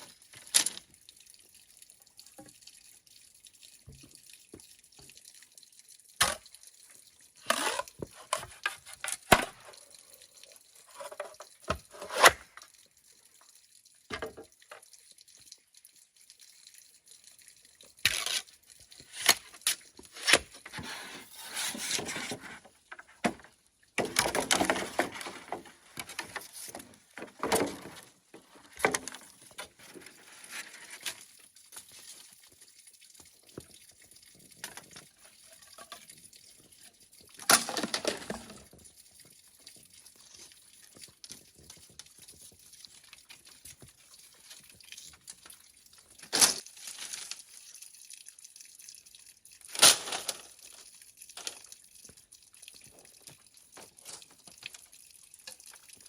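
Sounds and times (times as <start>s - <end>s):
rustling or splashing: 6.2s - 13.5s, 17.8s - 48.1s, 49.6s - 56.0s.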